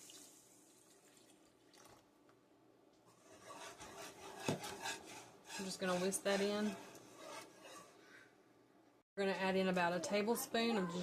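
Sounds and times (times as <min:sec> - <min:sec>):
milk pouring into pot: 0:00.0 - 0:02.1
whisk scraping a pot: 0:03.1 - 0:08.2.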